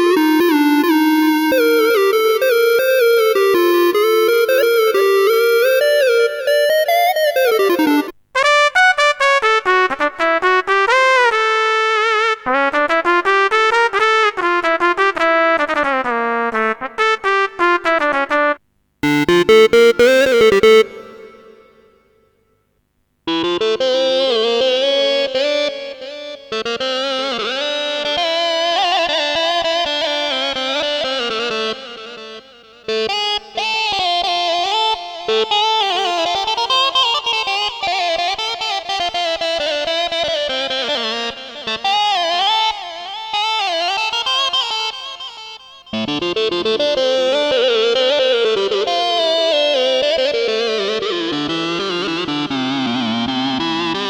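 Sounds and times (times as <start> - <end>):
keyboard synth melody with pitch bends: 0.0 - 22.2, 23.3 - 54.0.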